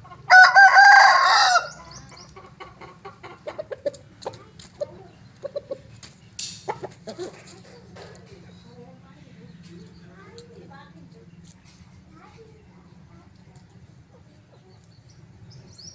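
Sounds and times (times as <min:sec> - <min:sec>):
rooster crowing: 0:00.3 - 0:01.9
soft clucks: 0:01.8 - 0:08.6.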